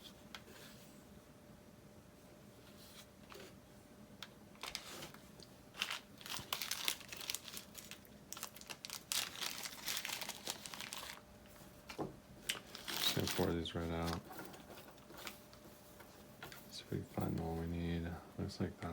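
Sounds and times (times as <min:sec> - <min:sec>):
plastic bag crinkling: 0:04.6 - 0:11.2, 0:12.5 - 0:15.4.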